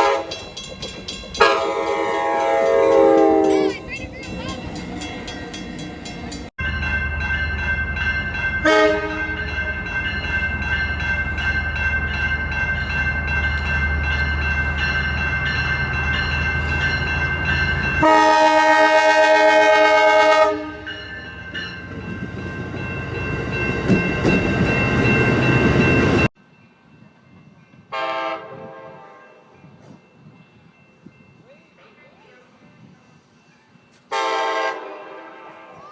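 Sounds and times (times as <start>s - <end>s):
train horn blasts: 0.0s - 0.4s, 1.4s - 3.8s, 8.6s - 9.5s, 18.0s - 20.9s, 27.9s - 29.4s, 34.1s - 35.8s
rumble of moving train: 0.0s - 35.9s.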